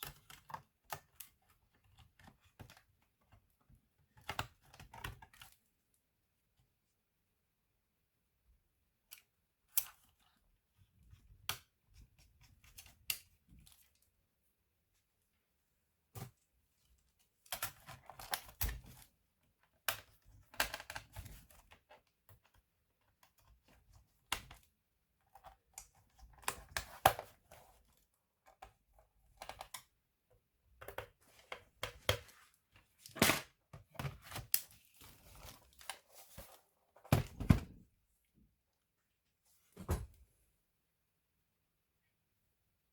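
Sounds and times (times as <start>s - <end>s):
hands handling laptop parts: 30.8s - 37.9s.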